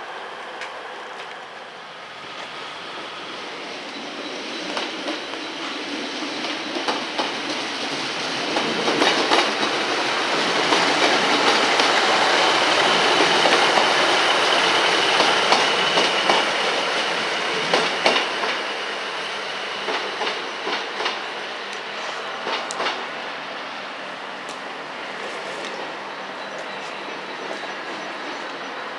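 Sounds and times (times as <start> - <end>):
train rumbling past: 0.0 - 28.9
wheels clicking over rail joints: 6.4 - 17.0.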